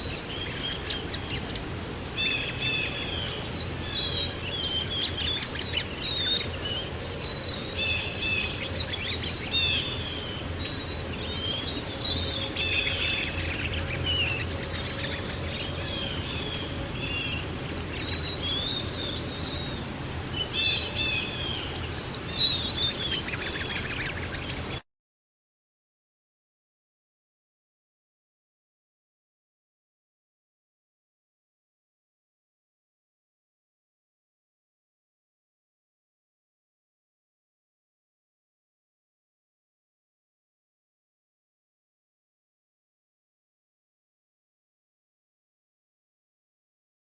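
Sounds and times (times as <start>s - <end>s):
songbirds chirping and trilling: 0.0s - 24.8s.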